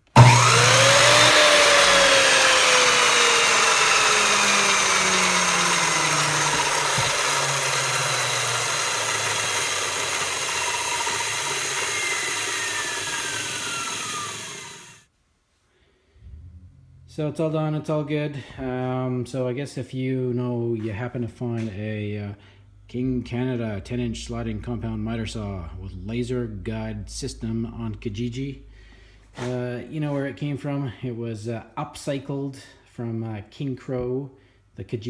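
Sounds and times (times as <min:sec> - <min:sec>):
miter saw motor whine: 0:00.0 - 0:15.0.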